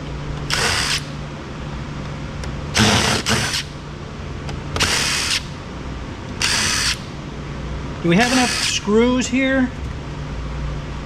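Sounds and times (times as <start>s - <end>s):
power screwdriver whirring: 0.5s - 1.1s, 2.8s - 3.7s, 4.8s - 5.5s, 6.4s - 7.1s, 8.2s - 8.8s.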